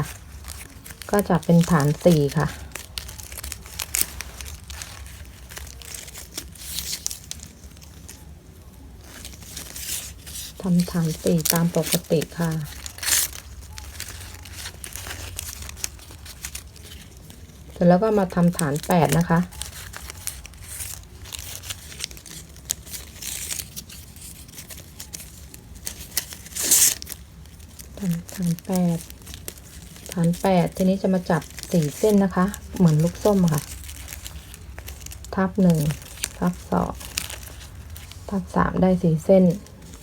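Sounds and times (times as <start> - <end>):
ribbon crinkling and rustling: 0.0 - 40.0.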